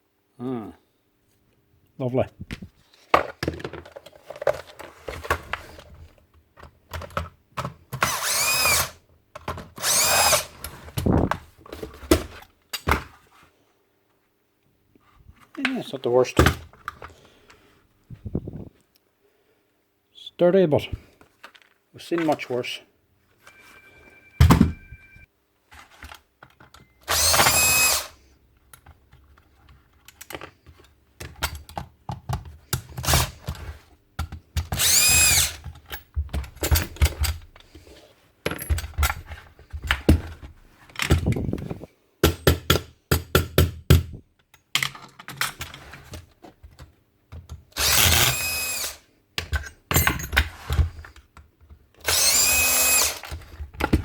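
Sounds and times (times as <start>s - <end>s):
cordless drill spinning: 8.0s - 9.0s, 9.8s - 10.6s, 27.0s - 28.2s, 34.7s - 35.6s, 47.8s - 49.0s, 52.0s - 53.4s
clicks and knocks of tools: 49.4s - 52.2s.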